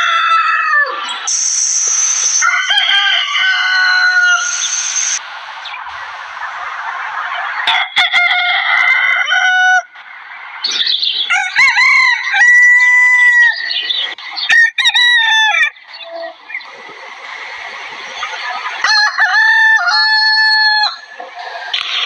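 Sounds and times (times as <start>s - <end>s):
rooster crowing: 0.0s - 1.0s, 2.2s - 5.2s, 7.6s - 9.9s, 11.3s - 13.7s, 14.5s - 15.8s, 18.8s - 21.2s.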